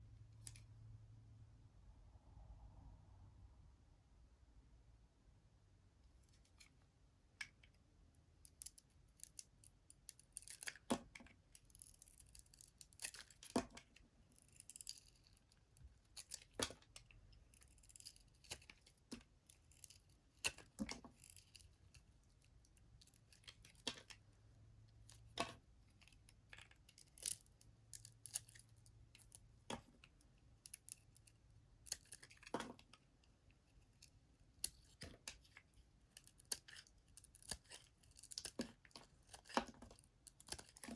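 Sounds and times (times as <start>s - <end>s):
bar soap cracking under blade: 10.1s - 11.2s, 11.8s - 14.0s, 36.2s - 40.9s.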